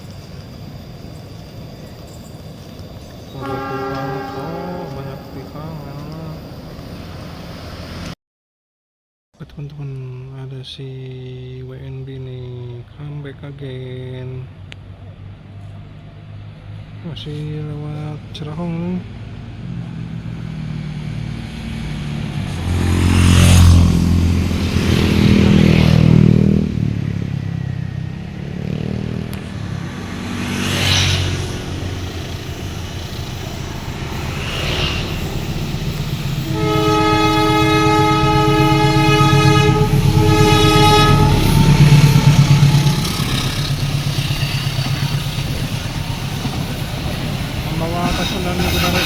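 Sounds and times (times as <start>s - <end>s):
train rumbling past: 0.0s - 8.2s, 10.3s - 49.0s
train horn chord blasts: 3.3s - 6.2s, 29.6s - 44.4s.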